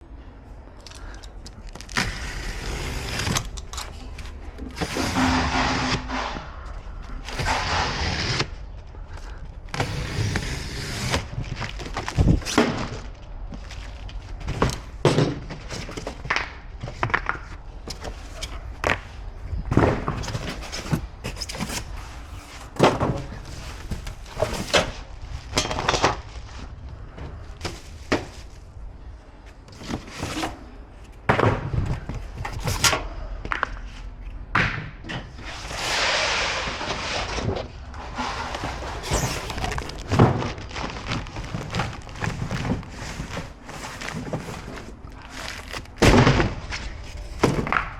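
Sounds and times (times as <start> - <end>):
packaging rustling: 38.0 - 47.9.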